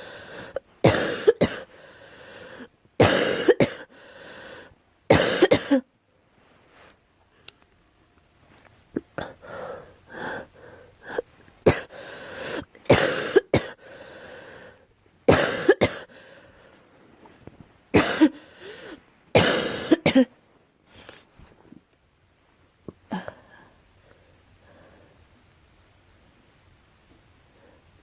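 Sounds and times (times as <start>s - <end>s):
girl coughing: 0.8s - 1.7s, 3.0s - 3.9s, 5.1s - 5.9s, 11.1s - 11.9s, 12.9s - 13.8s, 15.3s - 16.1s, 17.9s - 18.4s, 19.4s - 20.3s.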